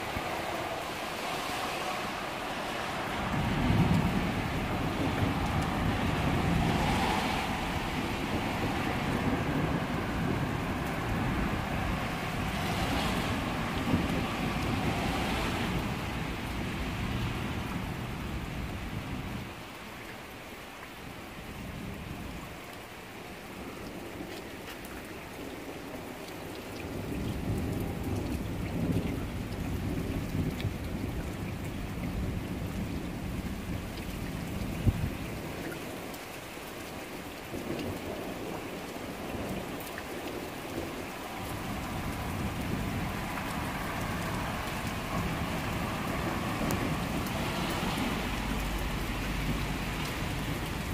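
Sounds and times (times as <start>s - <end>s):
thunder rumbling: 0.0s - 19.6s, 37.1s - 50.9s
rain falling: 0.0s - 50.9s.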